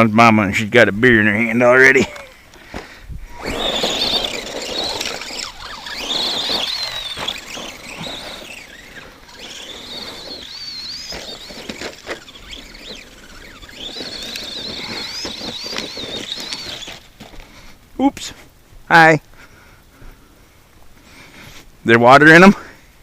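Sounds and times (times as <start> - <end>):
tires rustling on dirt: 0.5 - 23.0
electric motor and gears whining: 3.2 - 17.5.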